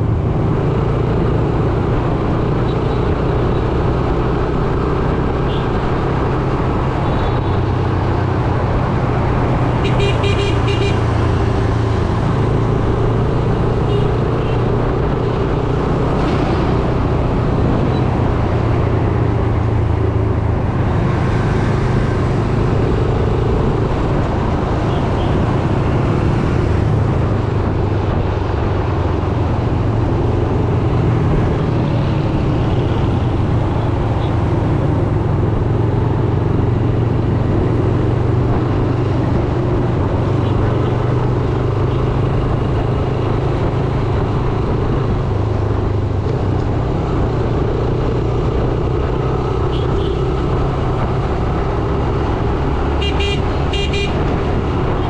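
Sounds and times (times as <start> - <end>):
road noise: 0.0 - 55.0
vehicle horns tooting: 9.8 - 11.0, 53.0 - 54.2.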